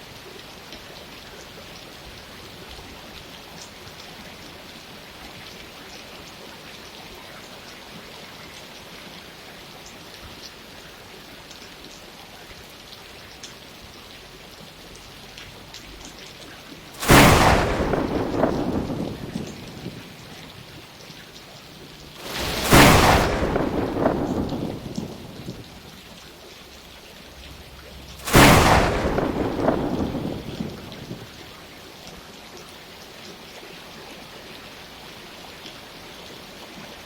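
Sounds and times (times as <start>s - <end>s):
steady rain: 0.0s - 37.0s
thunder clap: 17.0s - 20.8s, 22.1s - 26.1s, 27.6s - 31.6s.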